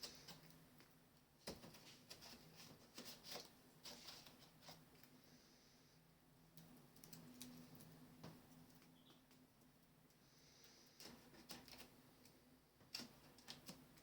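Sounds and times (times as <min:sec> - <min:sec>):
birds' feet tapping and scratching: 0:00.0 - 0:05.2, 0:10.6 - 0:14.0.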